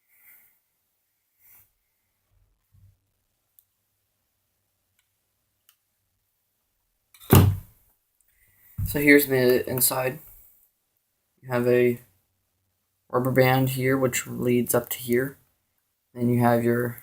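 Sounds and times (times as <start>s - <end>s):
loud thump: 7.3s - 7.7s.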